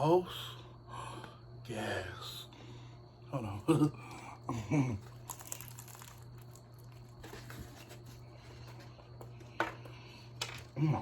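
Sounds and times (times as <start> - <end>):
crispy egg rolls crunching: 5.0 - 7.8.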